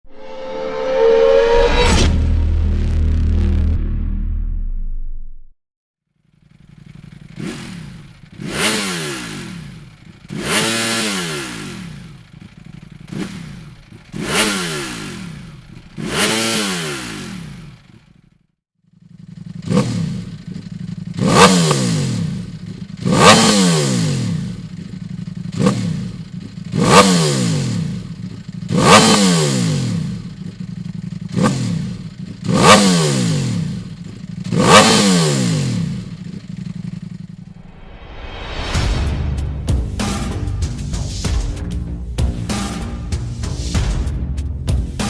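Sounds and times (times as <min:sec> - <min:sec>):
motorcycle engine throttle blips: 0:06.2 - 0:37.7.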